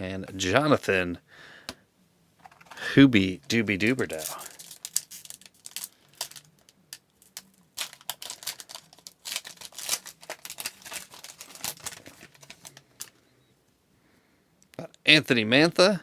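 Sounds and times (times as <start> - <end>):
card pack wrapper crinkling: 2.4 - 13.2
cards rustling: 2.4 - 13.2.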